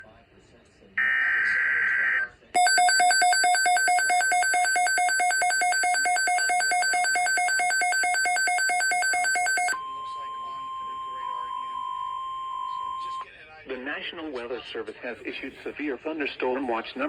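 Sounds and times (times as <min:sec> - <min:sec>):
two-pitch electronic alarm beeping: 0:02.6 - 0:10.5.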